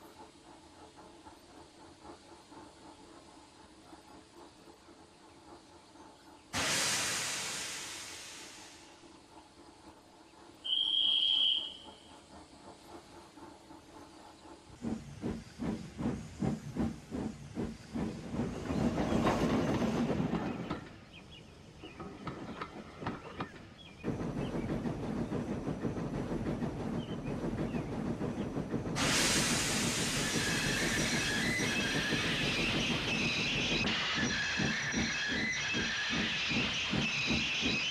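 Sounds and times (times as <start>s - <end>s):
steam hissing: 0.0s - 22.1s, 22.7s - 37.9s
train rumbling on rails: 0.0s - 37.9s
steam locomotive puffing: 6.6s - 9.3s, 10.7s - 21.1s, 21.8s - 37.9s.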